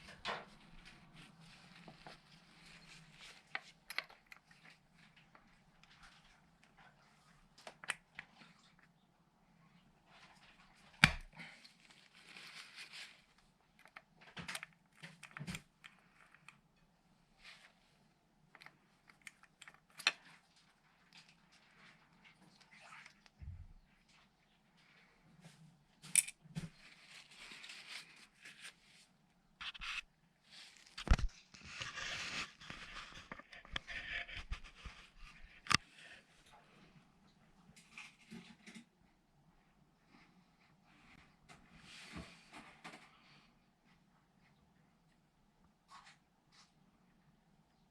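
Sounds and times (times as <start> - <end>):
rustling or scraping: 0.0 - 7.3, 10.1 - 16.5, 24.0 - 36.4.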